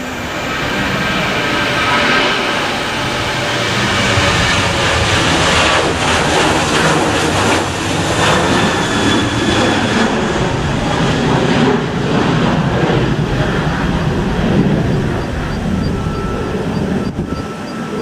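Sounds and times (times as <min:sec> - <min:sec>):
jet engine roar: 0:00.0 - 0:18.0
wind buffeting microphone: 0:00.1 - 0:18.0
faint high whine: 0:13.4 - 0:18.0.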